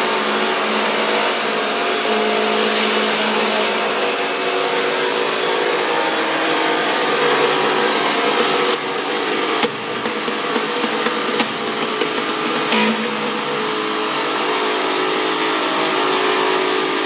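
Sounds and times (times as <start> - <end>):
metal-cutting saw motor hum: 4.6 - 16.7
sharp clicks and knocks: 7.6 - 13.9.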